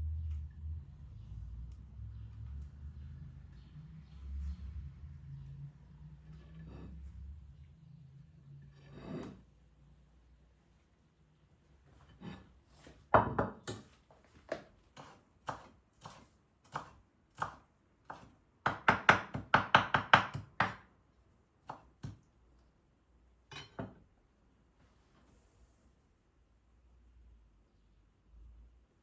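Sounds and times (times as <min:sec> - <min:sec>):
knife chopping on cutting board: 0:15.0 - 0:20.8.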